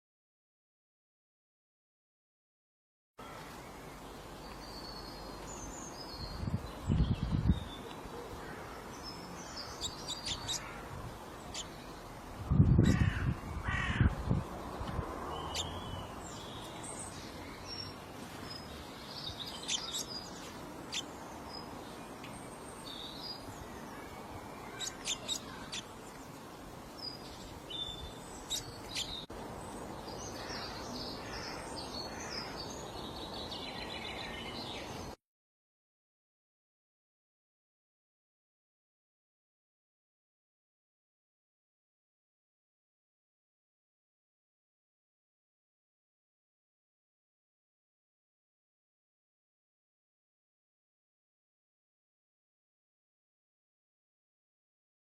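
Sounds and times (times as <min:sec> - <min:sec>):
small birds chirping: 0:03.2 - 0:35.2
loud rough bird calls: 0:08.2 - 0:11.7, 0:19.6 - 0:20.3, 0:30.3 - 0:32.7
steady background hiss: 0:14.6 - 0:35.2.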